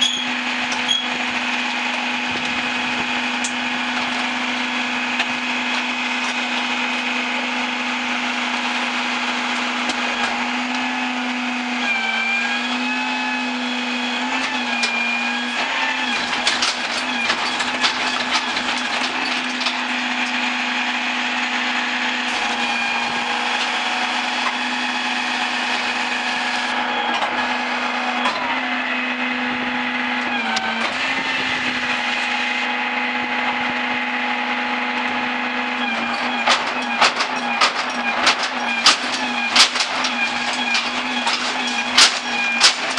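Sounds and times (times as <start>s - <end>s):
hydraulic machine whine: 0.0s - 42.9s
knocks and clatter: 16.0s - 20.4s, 35.8s - 42.9s.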